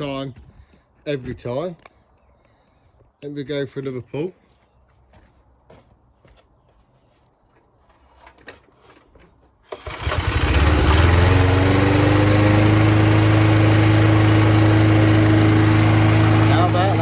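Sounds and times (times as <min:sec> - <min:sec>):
lawn mower engine starting and running: 0:09.7 - 0:17.0.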